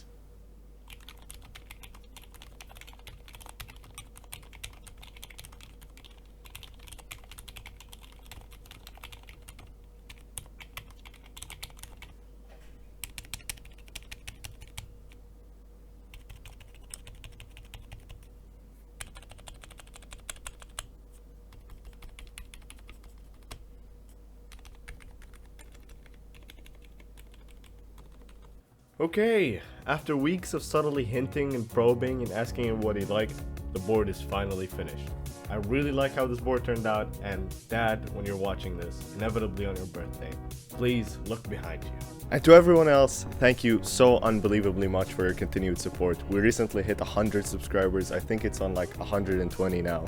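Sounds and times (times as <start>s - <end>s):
faint steady hum: 0.0s - 34.0s, 41.4s - 50.0s
muted mechanical keyboard typing: 0.9s - 12.2s, 13.0s - 15.2s, 16.1s - 18.3s, 19.0s - 20.9s, 21.5s - 23.7s, 24.5s - 28.6s, 42.5s - 50.0s.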